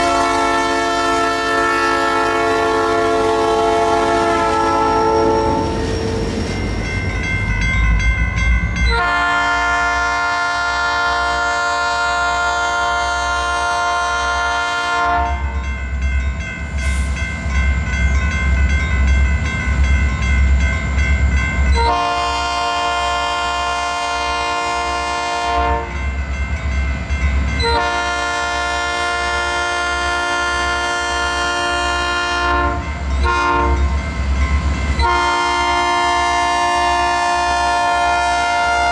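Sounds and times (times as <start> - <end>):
locomotive horn blasts: 0.0 - 6.3, 8.8 - 15.6, 21.8 - 26.0, 27.6 - 33.9, 35.0 - 38.9
train rumble: 0.0 - 38.9.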